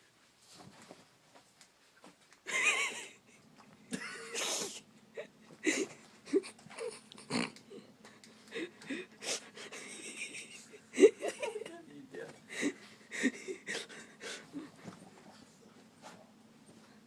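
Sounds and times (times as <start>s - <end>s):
dog snorting and wheezing: 5.6s - 7.8s.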